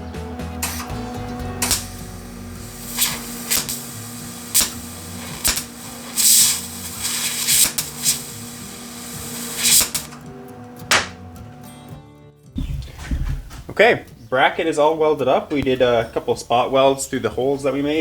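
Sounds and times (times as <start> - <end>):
background music: 0.0 - 16.4
metal fabrication noises: 0.4 - 11.6.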